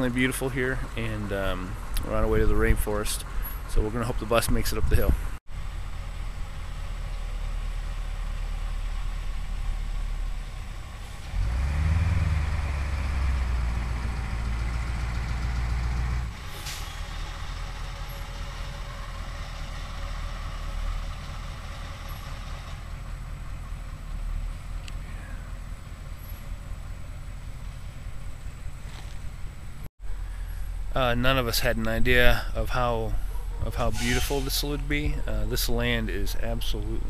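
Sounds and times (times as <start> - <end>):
bus engine straining under load: 0.0 - 31.6, 32.2 - 37.0
short hiss: 16.5 - 17.1.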